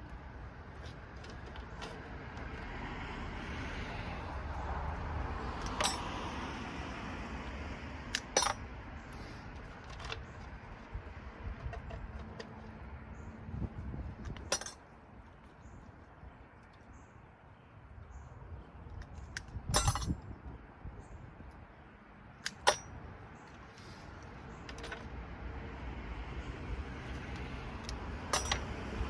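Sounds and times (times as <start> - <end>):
small metal parts clinking: 5.6 - 6.0, 8.1 - 10.5, 14.2 - 14.9, 19.0 - 20.2, 22.4 - 23.0, 27.8 - 28.7
handling noise: 8.2 - 8.7, 9.5 - 15.8, 28.3 - 28.7.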